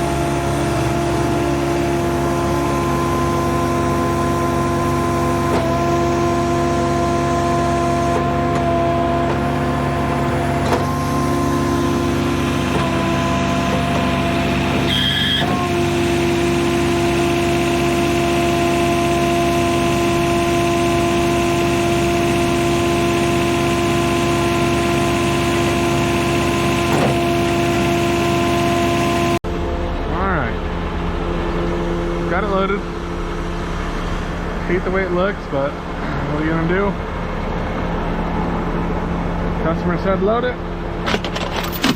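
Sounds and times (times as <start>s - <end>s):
backhoe diesel engine running: 0.0s - 41.9s
short high beep: 14.9s - 15.4s.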